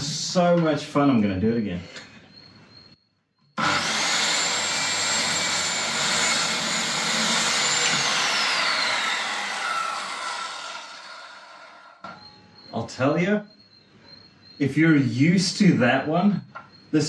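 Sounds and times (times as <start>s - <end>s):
circular saw cutting wood: 3.6s - 12.0s
saw blade spinning down: 3.6s - 12.0s.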